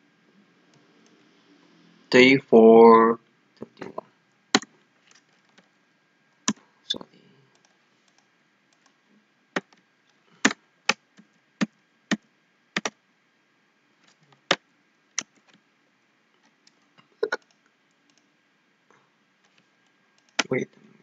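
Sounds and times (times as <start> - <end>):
mouse and keyboard clicks: 12.8 - 13.0.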